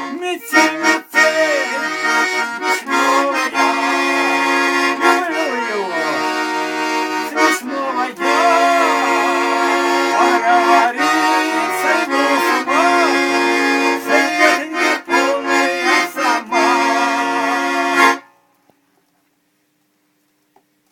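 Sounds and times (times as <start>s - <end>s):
accordion playing: 0.0s - 18.4s.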